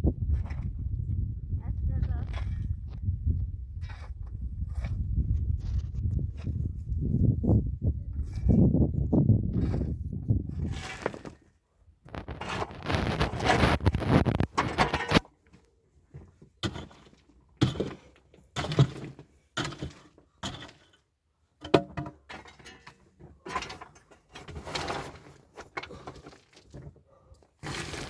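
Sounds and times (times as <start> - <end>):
objects knocking and scraping: 8.1 - 11.5, 12.1 - 21.0, 21.6 - 28.0
scraping and rustling: 10.6 - 11.5, 12.1 - 15.3.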